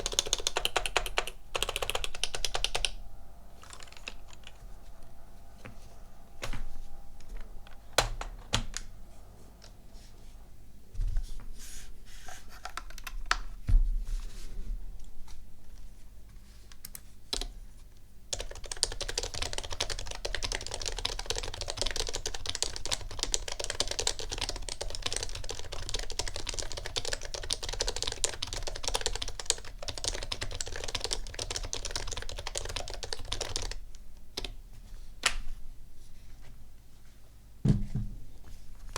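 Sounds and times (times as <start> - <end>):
fast typing on keyboard: 0.0 - 3.0, 3.6 - 4.6, 12.6 - 13.4, 18.3 - 34.5
heavy thumps: 37.6 - 38.5.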